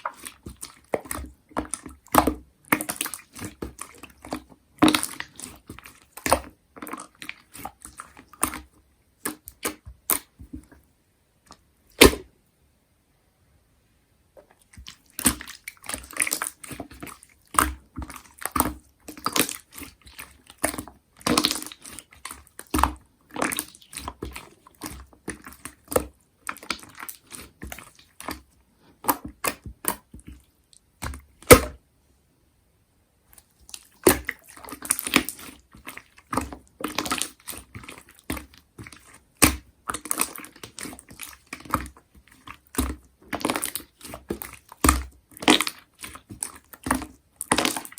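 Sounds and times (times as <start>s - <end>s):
slime squishing sticky clicks: 12.0s - 12.3s.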